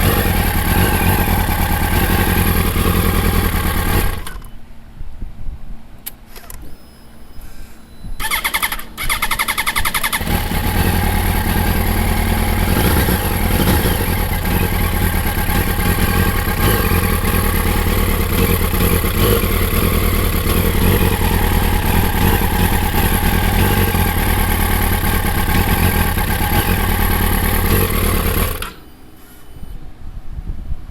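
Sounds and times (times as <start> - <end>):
motorcycle engine idling: 0.0 - 4.6, 8.2 - 29.2
electric starter cranking: 8.2 - 10.5, 27.6 - 28.9.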